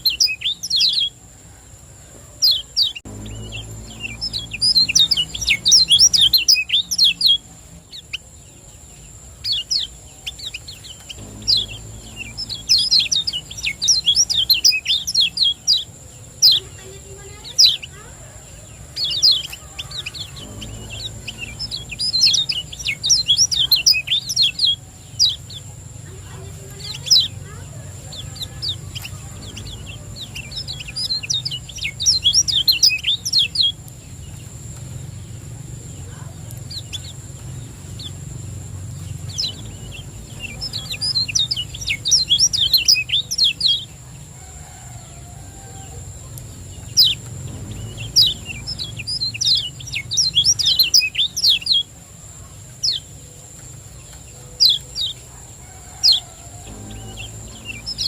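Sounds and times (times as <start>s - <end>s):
bird singing high chirping phrases: 0.0s - 58.0s
low hum: 3.0s - 8.0s, 10.7s - 15.9s, 19.8s - 32.7s, 46.1s - 50.5s, 56.2s - 58.0s
steady high whine: 3.0s - 8.0s, 10.4s - 16.3s, 18.8s - 42.9s, 56.1s - 58.0s.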